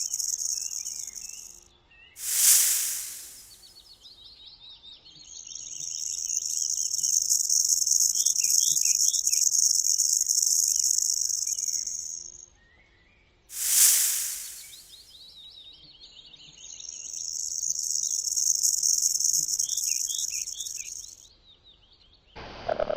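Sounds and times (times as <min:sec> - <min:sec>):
birds chirping faintly: 0:00.0 - 0:01.6, 0:02.2 - 0:03.7, 0:05.2 - 0:12.4, 0:13.5 - 0:15.2, 0:16.5 - 0:21.2
snake hissing: 0:02.2 - 0:03.6, 0:13.5 - 0:15.1.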